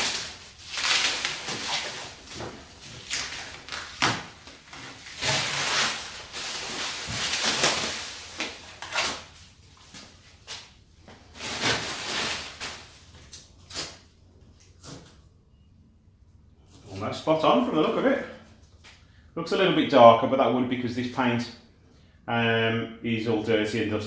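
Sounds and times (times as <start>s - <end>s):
masking tape rustling and tearing: 0.0s - 15.2s.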